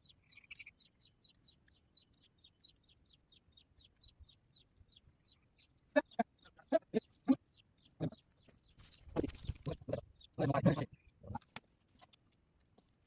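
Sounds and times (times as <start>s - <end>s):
loud clucking bird calls: 5.3s - 12.2s.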